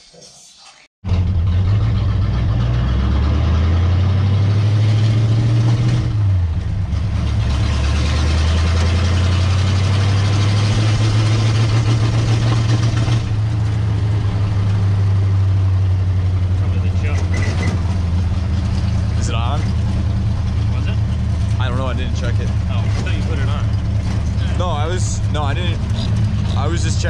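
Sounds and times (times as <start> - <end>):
car engine running: 1.0 - 27.0
road and wind noise: 1.0 - 27.0.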